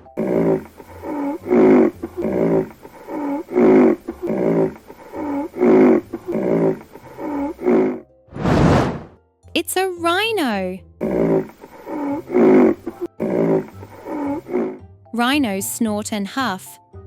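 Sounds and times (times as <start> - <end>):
rhinoceros snorting and huffing: 0.0 - 9.1, 11.0 - 14.8.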